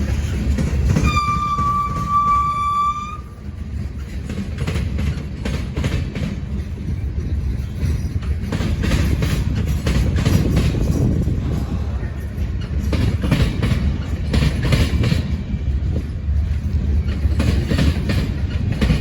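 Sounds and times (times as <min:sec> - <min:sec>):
passing train rumble: 0:00.0 - 0:19.0
wheels clacking over rail joints: 0:00.0 - 0:19.0
train horn: 0:01.0 - 0:03.5.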